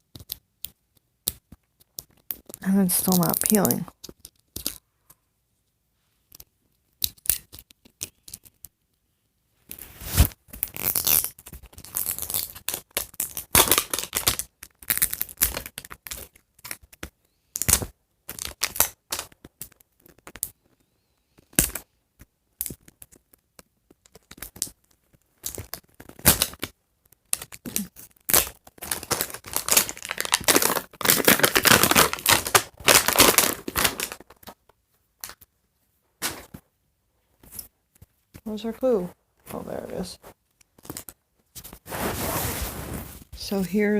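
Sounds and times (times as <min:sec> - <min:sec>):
plastic wrapping crinkling and ripping: 0:09.7 - 0:20.6, 0:22.6 - 0:35.4.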